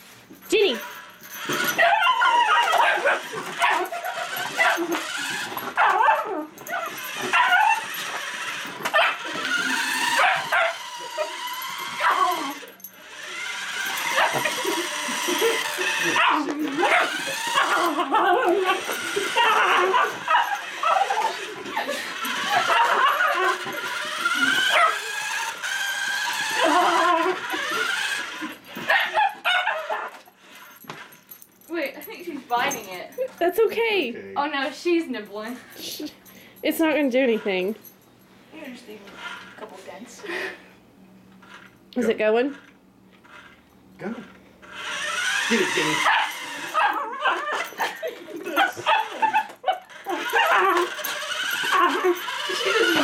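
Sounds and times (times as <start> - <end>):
small dog yipping and barking: 1.8 - 5.0, 5.8 - 7.9, 8.9 - 11.4, 15.9 - 21.4, 24.6 - 25.2, 28.9 - 30.1, 46.0 - 47.8, 48.6 - 51.0.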